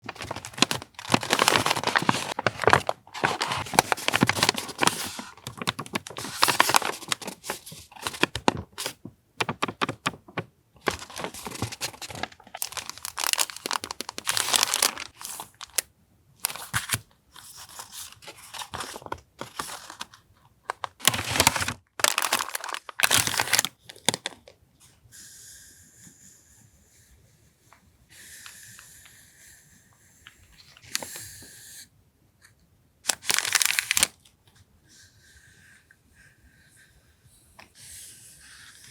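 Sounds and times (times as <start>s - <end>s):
packaging crinkling and tearing: 0.0s - 24.5s, 33.1s - 34.2s.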